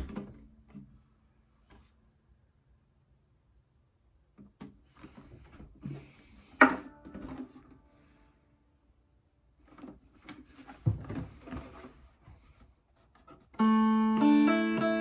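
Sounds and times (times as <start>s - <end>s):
soft knocks and rustles: 9.6s - 13.5s
dulcimer plucked notes: 13.6s - 15.0s.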